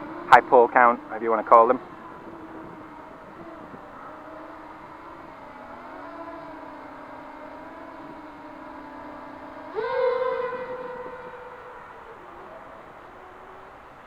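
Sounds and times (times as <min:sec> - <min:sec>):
drone motors whining: 0:00.0 - 0:14.0.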